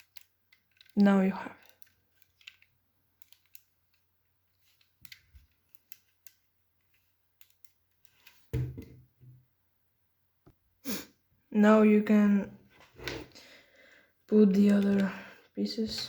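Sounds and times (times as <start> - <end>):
plastic bricks clicking: 0.0 - 4.0, 7.4 - 8.4.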